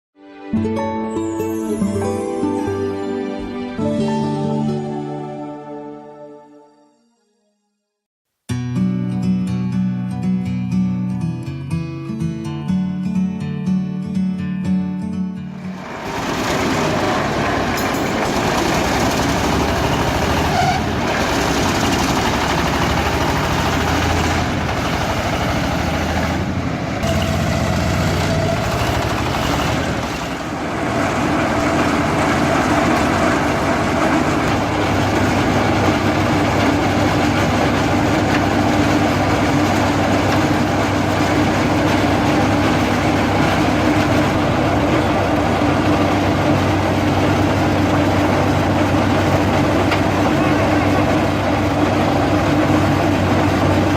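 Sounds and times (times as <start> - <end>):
press machine engine running: 15.6 - 53.9.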